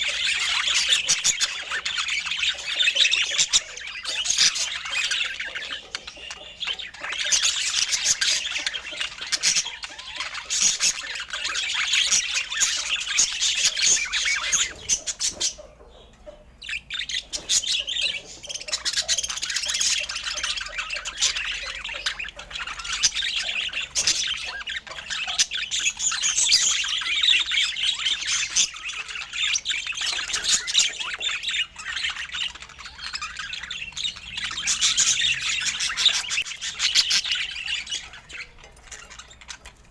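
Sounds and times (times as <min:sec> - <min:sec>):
budgerigars chattering and squawking: 0:00.0 - 0:39.9.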